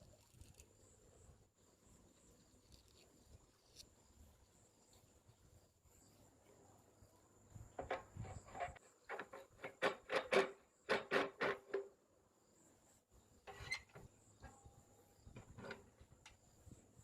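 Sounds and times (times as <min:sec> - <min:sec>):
wooden knocks and scrapes: 0:07.7 - 0:12.0, 0:15.3 - 0:16.3.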